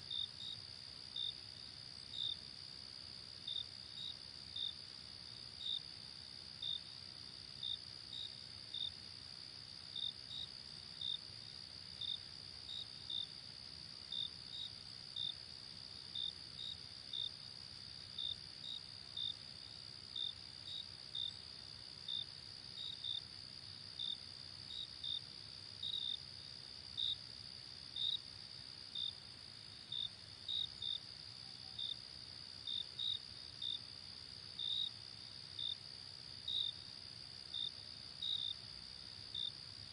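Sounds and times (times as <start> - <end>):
insects trilling and chirping: 0.0 - 39.9.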